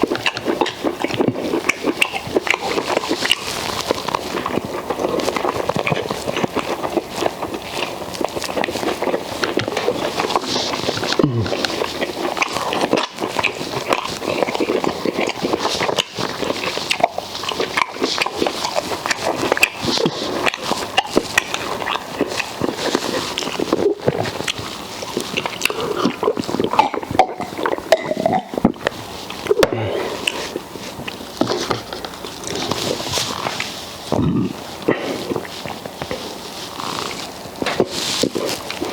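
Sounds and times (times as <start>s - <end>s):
wet chewing: 0.0s - 38.9s
mouth clicks: 8.6s - 24.5s.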